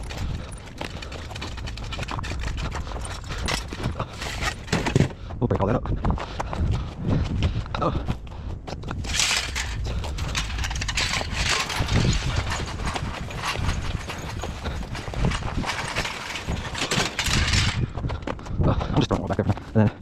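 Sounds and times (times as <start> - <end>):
crunching and knocking of debris: 0.0 - 5.2, 8.9 - 18.0.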